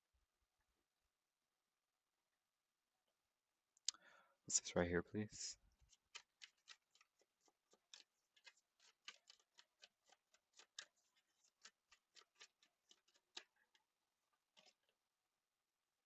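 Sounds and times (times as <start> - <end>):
cards being shuffled: 5.8 - 14.9.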